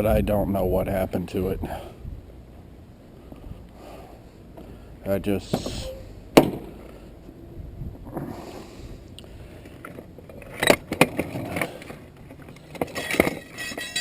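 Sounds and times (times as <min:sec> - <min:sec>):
handling scraping: 0:03.2 - 0:14.0
sharp knocks: 0:06.4 - 0:06.8.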